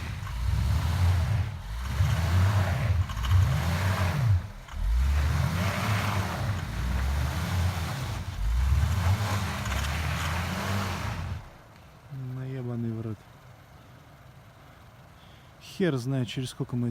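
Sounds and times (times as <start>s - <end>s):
car engine revving: 0.0s - 11.6s.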